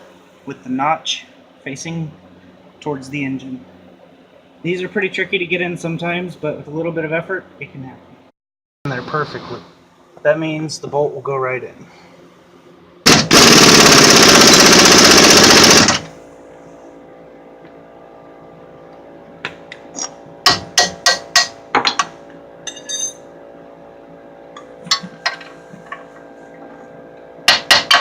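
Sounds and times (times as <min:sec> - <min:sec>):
impact wrench running: 0:13.1 - 0:16.2.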